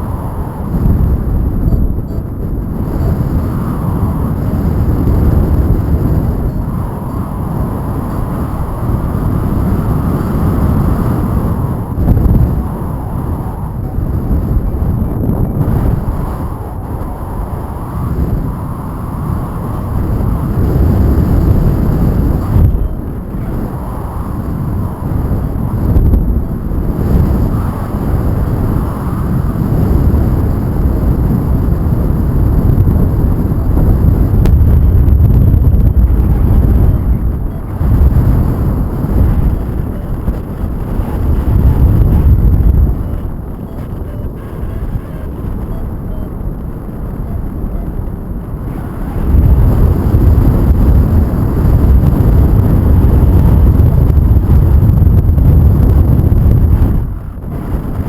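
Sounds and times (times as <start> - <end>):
wind buffeting microphone: 0.0 - 58.0.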